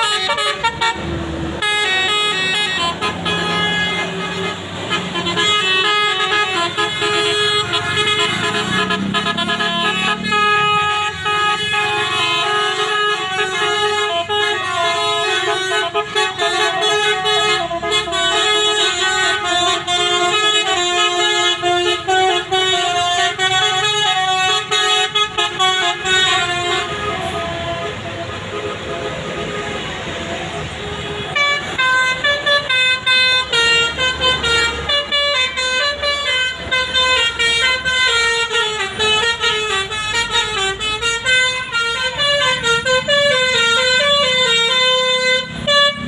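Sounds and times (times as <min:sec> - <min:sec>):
musical air horn tune: 0:00.0 - 0:29.8, 0:30.9 - 0:46.0
held horn tones: 0:00.0 - 0:46.0.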